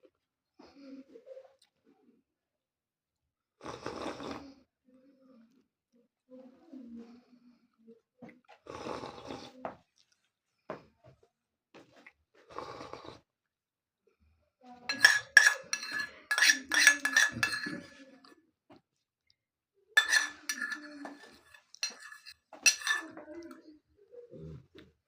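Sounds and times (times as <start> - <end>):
cutlery clinking against dishes: 14.9 - 18.0, 20.0 - 23.3.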